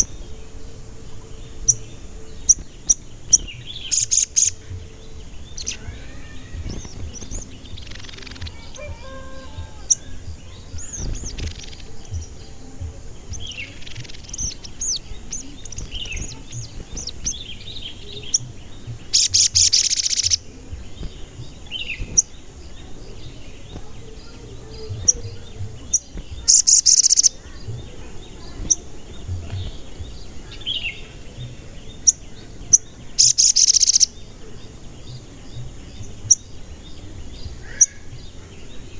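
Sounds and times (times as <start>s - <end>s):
bird chirping cuit cuit: 0.0s - 38.9s
bursts of rapid high chirping: 2.4s - 30.8s, 32.0s - 34.2s.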